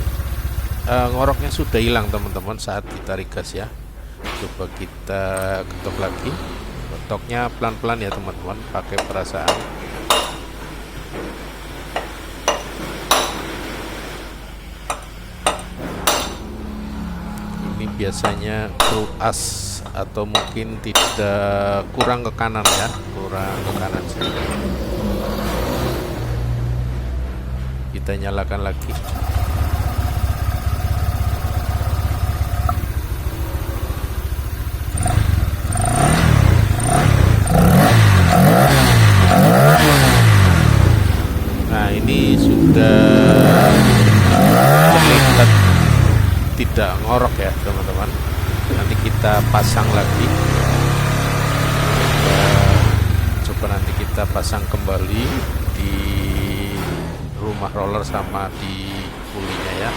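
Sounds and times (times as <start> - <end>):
scooter engine idling and revving: 0.0 - 2.6, 5.1 - 7.7, 14.8 - 21.2, 22.6 - 27.9, 28.7 - 59.6
hammer tapping on metal: 9.0 - 10.6, 12.0 - 13.5, 14.9 - 16.5, 18.2 - 21.3, 22.0 - 23.2.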